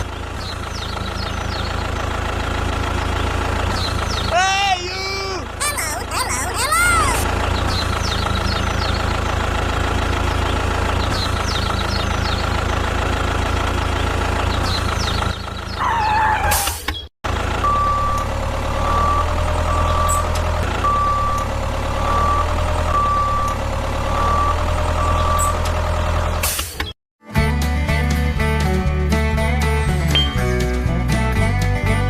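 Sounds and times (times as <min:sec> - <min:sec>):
truck engine running: 0:00.0 - 0:32.0
reversing beeper: 0:17.6 - 0:25.7.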